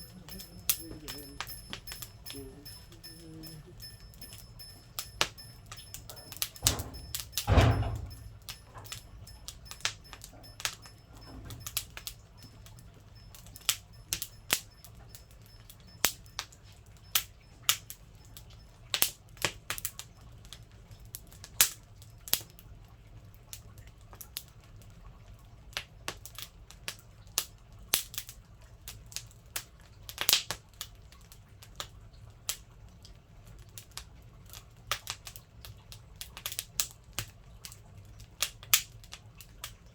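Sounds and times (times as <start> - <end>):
firewood crackling in a stove: 0.0 - 39.9
heavy thud: 6.6 - 8.8.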